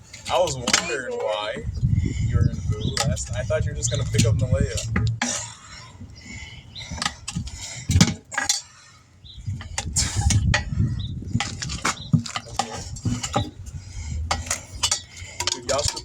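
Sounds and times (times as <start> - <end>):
low rumble: 1.6 - 5.2, 13.0 - 15.4
metal tools clinking: 14.3 - 16.0.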